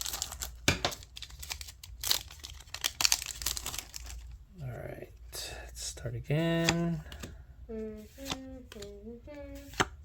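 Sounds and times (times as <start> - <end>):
foil wrapper crinkling and tearing: 0.0 - 4.4.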